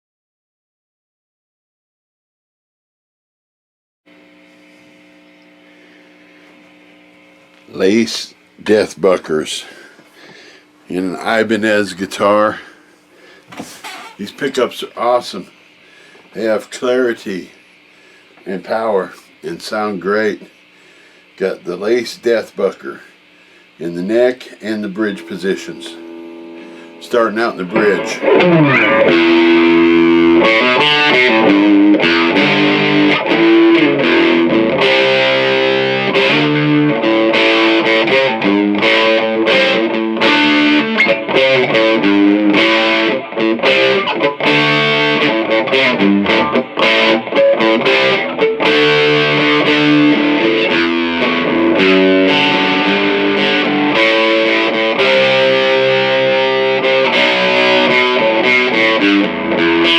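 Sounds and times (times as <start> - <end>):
distorted electric guitar riff: 13.5 - 59.9.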